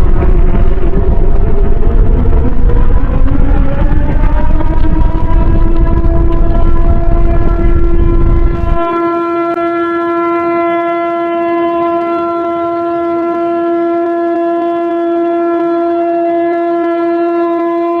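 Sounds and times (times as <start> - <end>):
deep earthquake rumble: 0.0 - 9.0.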